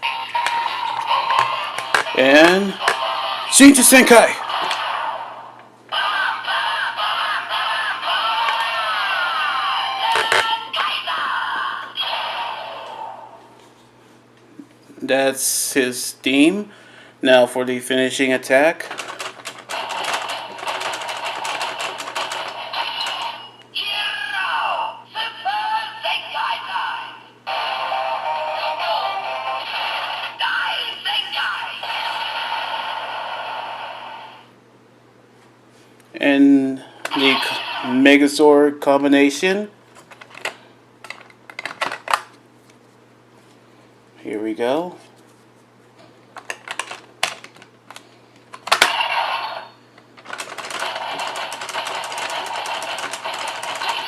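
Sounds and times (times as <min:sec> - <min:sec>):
toy electronic sound effects: 0:00.0 - 0:05.4, 0:06.0 - 0:11.1, 0:19.7 - 0:23.6, 0:48.7 - 0:49.8, 0:50.6 - 0:54.0
plastic toy clicks: 0:00.4 - 0:03.0, 0:10.1 - 0:10.5, 0:18.9 - 0:23.3, 0:40.2 - 0:42.3, 0:46.4 - 0:49.0, 0:50.2 - 0:54.0
toy electronic music with synthesized voice: 0:06.0 - 0:12.3.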